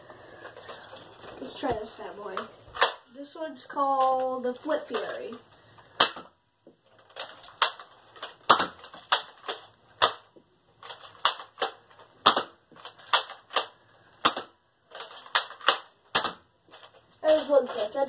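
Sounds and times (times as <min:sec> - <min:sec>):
toy blaster clacks and pops: 0:07.0 - 0:17.9.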